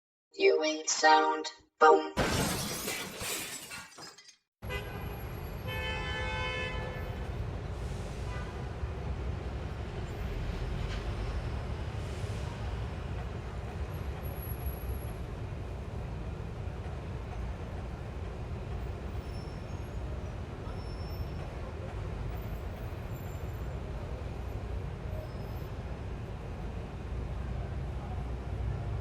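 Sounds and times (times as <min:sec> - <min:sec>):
brief pitched tone: 0:00.4 - 0:02.2
street traffic rumble: 0:04.6 - 0:29.0.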